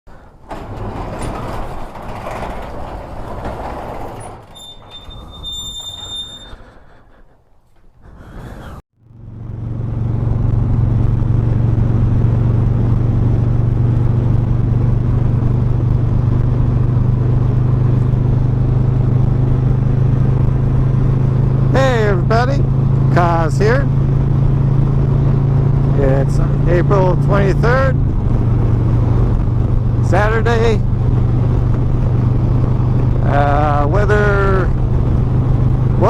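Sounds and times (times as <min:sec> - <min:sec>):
motorcycle engine running: 0:09.0 - 0:36.0
wind noise on microphone: 0:27.9 - 0:36.0.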